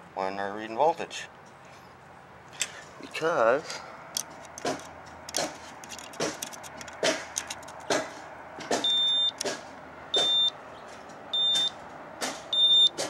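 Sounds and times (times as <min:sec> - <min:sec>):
short clicks and knocks: 0:04.2 - 0:09.6
high-pitched electronic beep: 0:08.9 - 0:09.4, 0:10.2 - 0:10.5.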